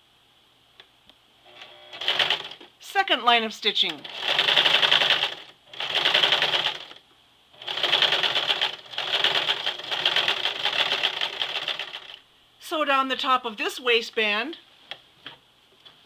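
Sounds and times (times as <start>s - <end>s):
sewing machine stitching: 1.5s - 2.7s, 3.9s - 7.0s, 7.6s - 12.2s.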